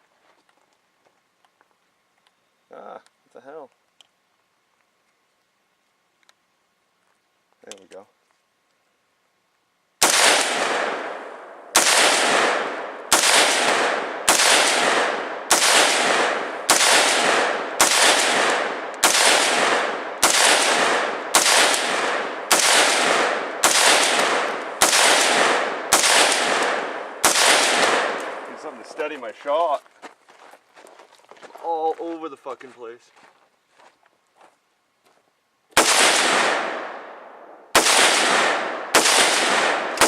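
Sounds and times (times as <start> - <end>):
rifle shots with echo: 10.0 - 29.1, 35.7 - 40.0.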